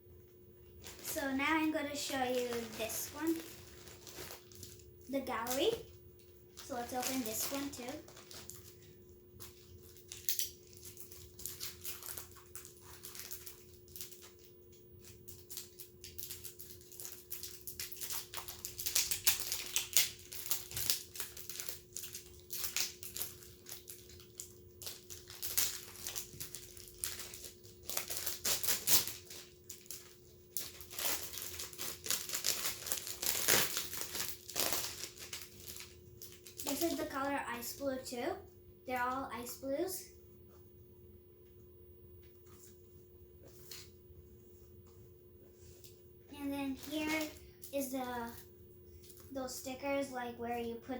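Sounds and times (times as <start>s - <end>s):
faint steady hum: 0.0s - 50.9s
packaging crinkling and rustling: 0.6s - 37.8s, 45.6s - 48.4s.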